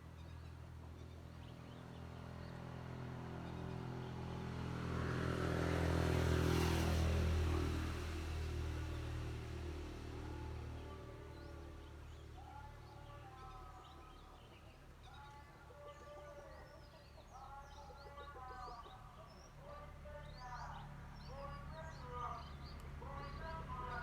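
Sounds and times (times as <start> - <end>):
low engine rumble: 0.0 - 24.0
birds chirping and calling: 10.8 - 24.0.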